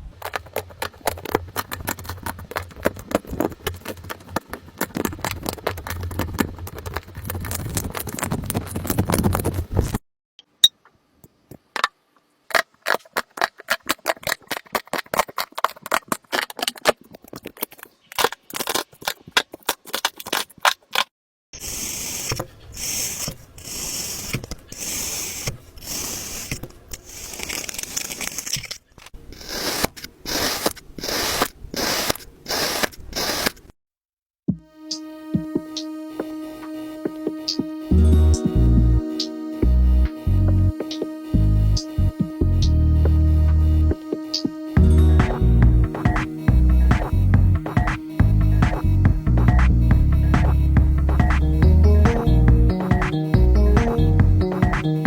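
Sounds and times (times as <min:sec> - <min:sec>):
slime crackling and popping: 0:00.4 - 0:09.4.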